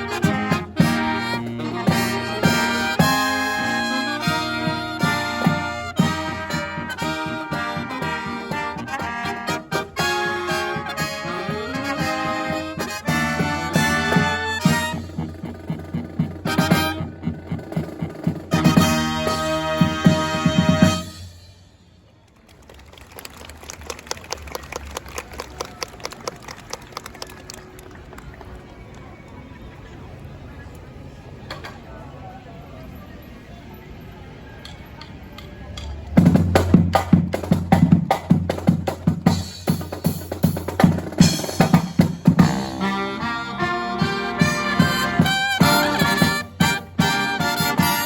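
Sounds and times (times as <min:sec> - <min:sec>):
brass held chords: 0:00.0 - 0:21.6, 0:41.1 - 0:48.0
marching drum cadence: 0:00.0 - 0:21.6, 0:35.4 - 0:48.0
audience clapping: 0:22.2 - 0:29.1.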